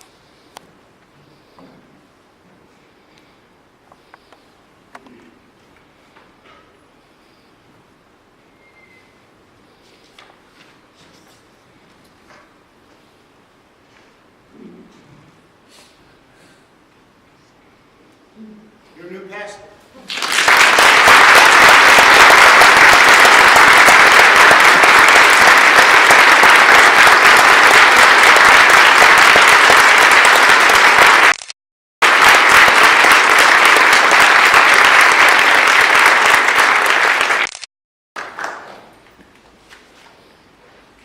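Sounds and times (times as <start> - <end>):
congregation applauding: 20.0 - 31.4, 32.0 - 39.0.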